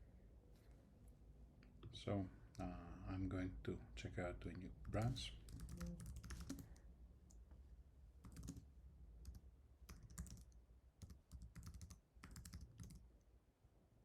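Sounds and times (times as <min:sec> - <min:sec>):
computer keyboard keys clicking: 0:04.9 - 0:06.8, 0:08.2 - 0:08.6, 0:09.2 - 0:13.0.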